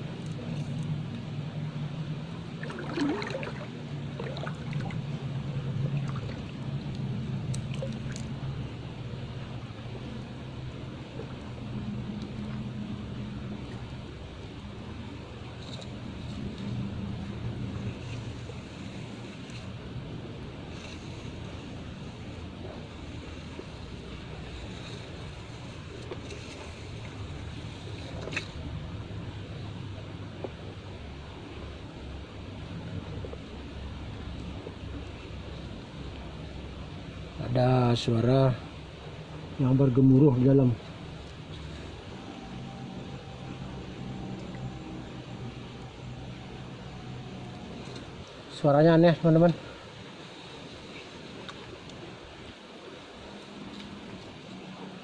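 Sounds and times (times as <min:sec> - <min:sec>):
steady low hum: 0:00.0 - 0:55.0
water trickling and gurgling: 0:00.0 - 0:55.0
small splashes: 0:02.4 - 0:08.6.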